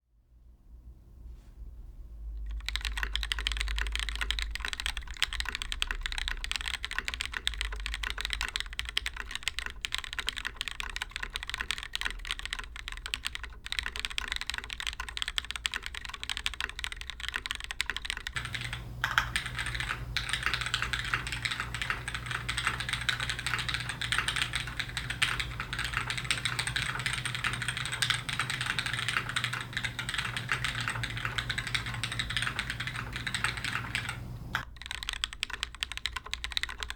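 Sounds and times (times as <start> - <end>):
mechanical keyboard typing: 2.5 - 36.9
steady low hum: 18.4 - 34.6.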